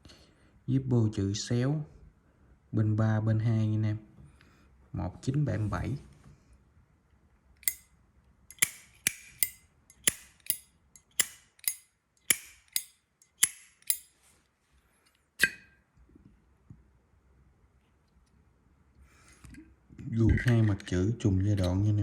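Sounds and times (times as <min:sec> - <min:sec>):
lighter lid clicking: 0:07.6 - 0:07.8, 0:08.5 - 0:10.6, 0:11.2 - 0:14.1.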